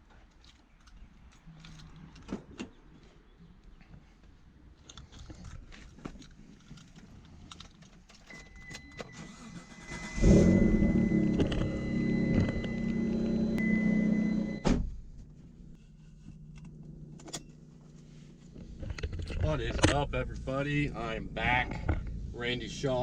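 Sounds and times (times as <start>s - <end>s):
car engine starting and running: 8.3s - 23.0s
steady high tone: 9.2s - 14.7s.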